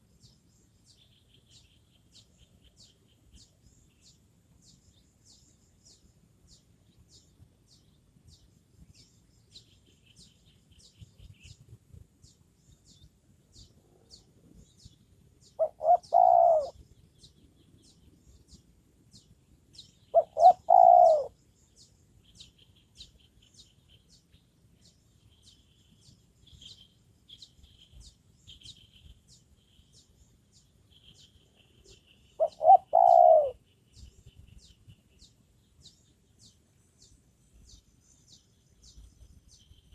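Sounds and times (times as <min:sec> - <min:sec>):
dove cooing: 0:15.6 - 0:16.8, 0:20.1 - 0:21.4, 0:32.4 - 0:33.6.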